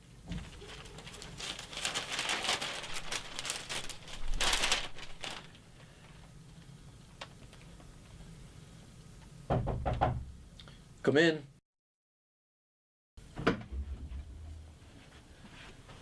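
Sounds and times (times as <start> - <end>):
rustling and crinkling: 0.1 - 8.3.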